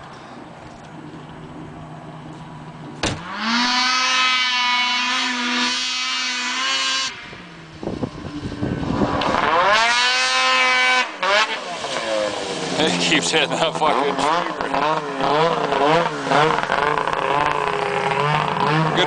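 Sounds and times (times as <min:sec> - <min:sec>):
snowmobile engine revving: 0:03.2 - 0:19.0.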